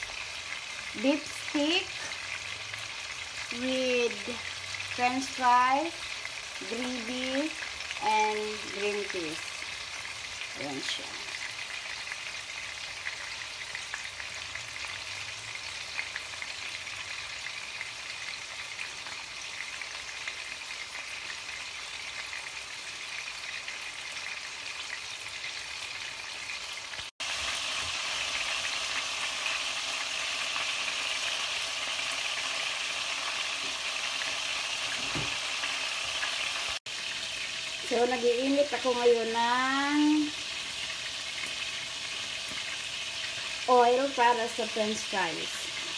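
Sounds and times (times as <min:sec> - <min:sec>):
steak sizzling in a frying pan: 0:00.0 - 0:45.9.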